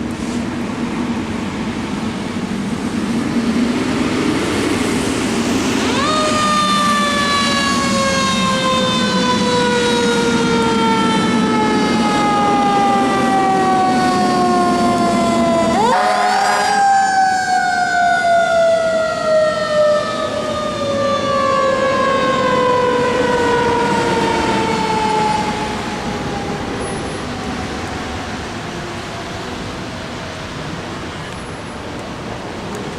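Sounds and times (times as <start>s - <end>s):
fire engine siren winding: 5.8s - 28.0s.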